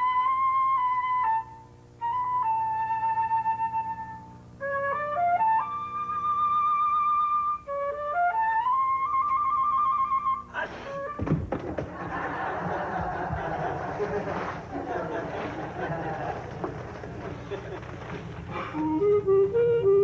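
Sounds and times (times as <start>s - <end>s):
solo flute melody: 0.0s - 11.2s, 18.5s - 20.0s
player breathing: 18.2s - 19.0s.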